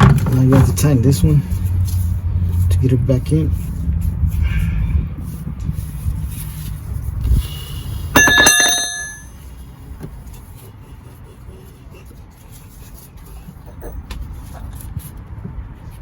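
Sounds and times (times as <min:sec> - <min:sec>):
low rumbling handling noise: 0:00.0 - 0:02.8, 0:08.2 - 0:10.2
metal tool clanging on metal: 0:08.2 - 0:09.3.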